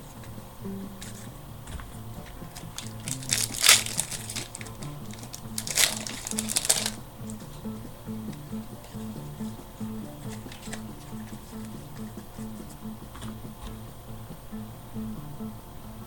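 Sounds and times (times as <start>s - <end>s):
background music: 0.0s - 16.0s
wrapper crinkling and tearing: 2.3s - 7.0s.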